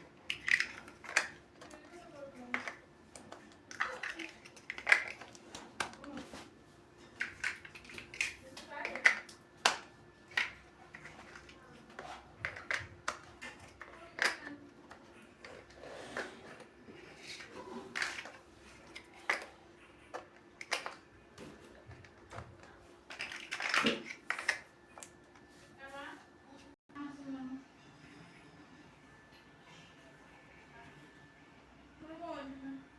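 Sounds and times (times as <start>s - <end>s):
plastic blocks snapping together: 0.3s - 1.8s, 2.5s - 6.2s, 7.2s - 10.6s, 20.2s - 21.0s, 23.1s - 25.1s
rattling clicks of blocks: 2.5s - 6.0s, 23.1s - 24.6s.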